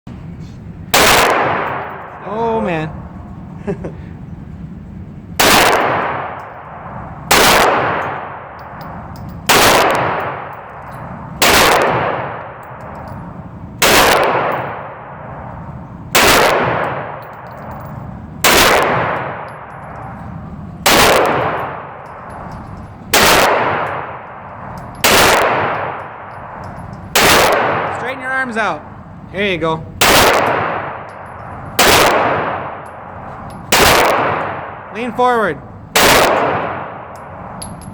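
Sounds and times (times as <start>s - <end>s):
suppressed pistol shots: 0.9s - 2.0s, 5.4s - 6.4s, 7.3s - 8.5s, 9.5s - 10.6s, 11.4s - 13.0s, 13.8s - 14.8s, 16.1s - 17.8s, 18.4s - 20.0s, 20.8s - 22.4s, 23.1s - 24.2s, 25.0s - 27.9s, 30.0s - 33.0s, 33.7s - 34.8s, 36.0s - 37.0s.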